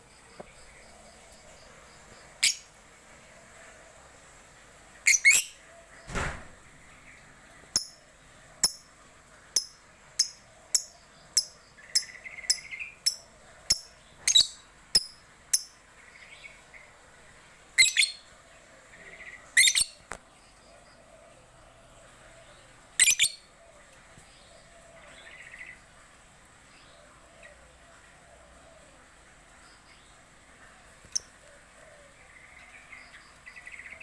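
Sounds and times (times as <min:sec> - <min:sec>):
lovebird shrill chirps: 0:02.4 - 0:02.7, 0:05.1 - 0:05.6, 0:09.6 - 0:15.8, 0:19.6 - 0:20.0, 0:23.0 - 0:23.4
single thump: 0:06.1 - 0:06.6.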